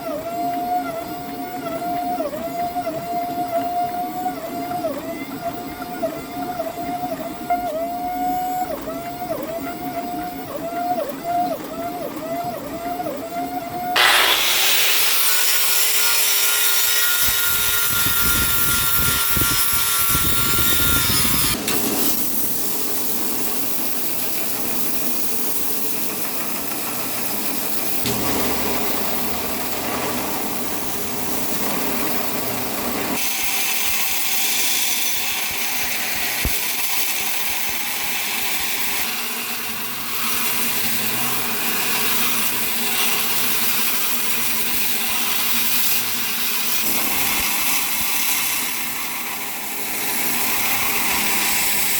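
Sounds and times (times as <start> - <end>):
power tool grinding steel: 13.9 - 22.6, 23.5 - 51.9.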